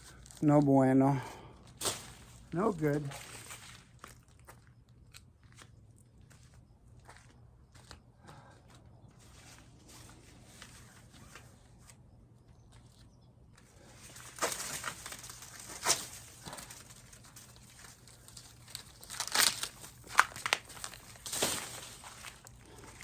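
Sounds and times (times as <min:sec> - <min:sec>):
corn husks tearing and rustling: 0:01.6 - 0:05.7, 0:13.8 - 0:23.0.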